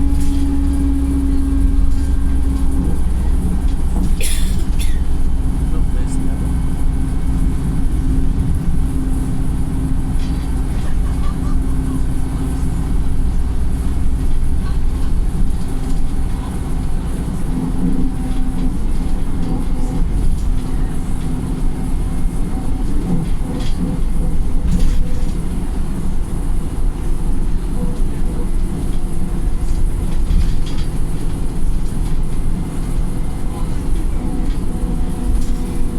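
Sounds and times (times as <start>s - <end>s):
road noise: 0.0s - 27.4s
bus engine drone: 0.0s - 35.9s.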